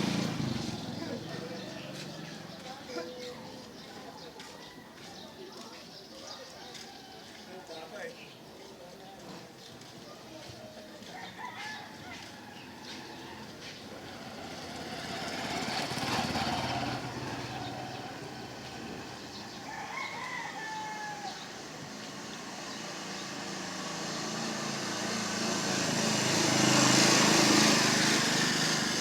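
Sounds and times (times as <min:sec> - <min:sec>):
motor vehicle passing: 0:00.0 - 0:04.5, 0:11.2 - 0:29.0
rooster crowing: 0:11.2 - 0:13.6, 0:19.5 - 0:21.7.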